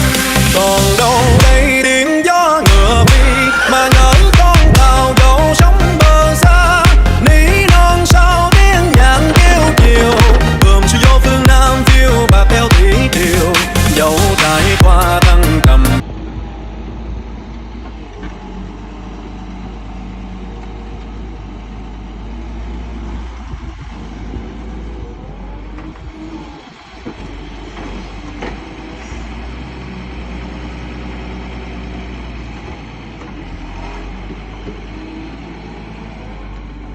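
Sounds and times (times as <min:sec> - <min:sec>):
loud music: 0:00.0 - 0:16.0
excavator diesel engine rumbling: 0:00.0 - 0:36.9.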